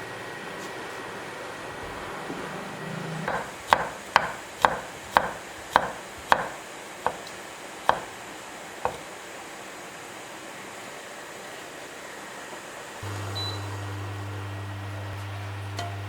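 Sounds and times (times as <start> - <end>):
sharp knocks: 3.3 - 7.3, 7.9 - 8.2.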